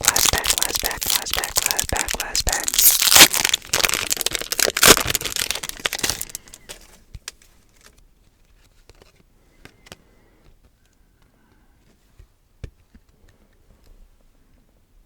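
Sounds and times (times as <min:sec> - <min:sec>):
wrapper crinkling and tearing: 0:00.0 - 0:08.0.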